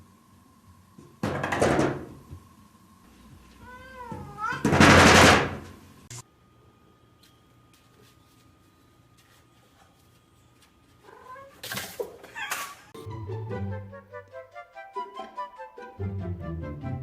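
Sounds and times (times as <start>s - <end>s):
cat meowing: 3.6s - 4.7s, 11.0s - 11.6s.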